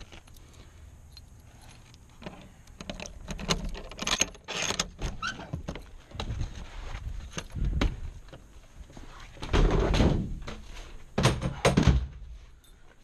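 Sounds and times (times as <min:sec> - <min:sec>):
rough rustling and scraping: 0:01.4 - 0:11.1.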